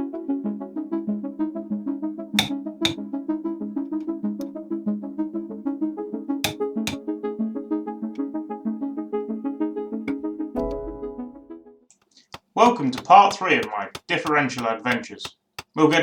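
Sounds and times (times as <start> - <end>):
sharp percussive hits: 2.4 - 3.0.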